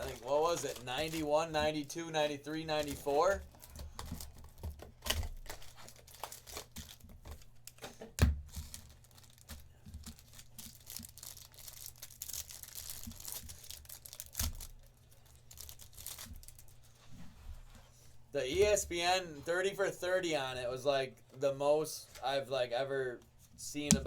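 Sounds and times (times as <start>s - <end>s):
card pack wrappers tearing and crinkling: 0.0s - 1.7s, 2.8s - 7.9s, 8.5s - 16.8s
cards shuffled and handled: 0.0s - 1.9s.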